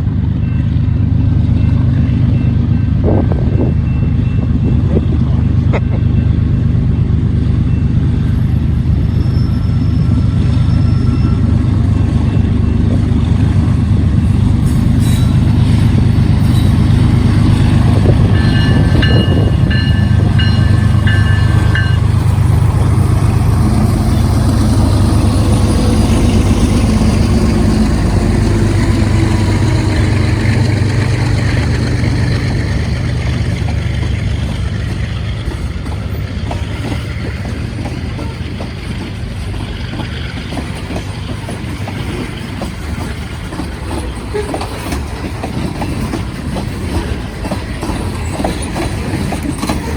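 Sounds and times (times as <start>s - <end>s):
diesel locomotives rumbling: 0.0s - 49.9s
freight cars rolling: 9.1s - 49.9s.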